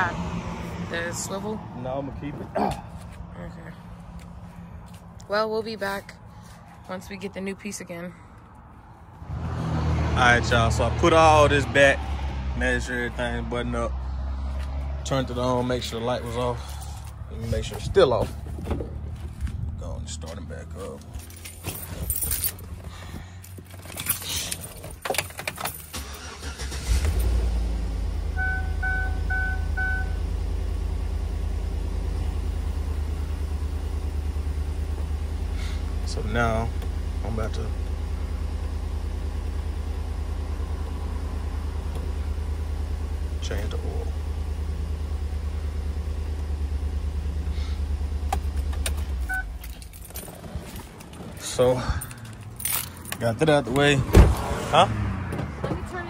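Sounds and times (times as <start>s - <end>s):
car engine starting and idling: 0.0s - 56.0s
keys jangling in ignition: 20.8s - 27.4s, 48.4s - 53.7s
short beep: 28.4s - 30.2s, 49.2s - 49.6s.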